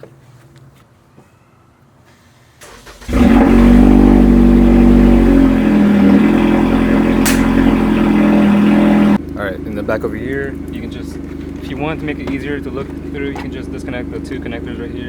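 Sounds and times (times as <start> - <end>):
car engine starting: 2.6 - 9.2
car engine idling: 2.7 - 9.2.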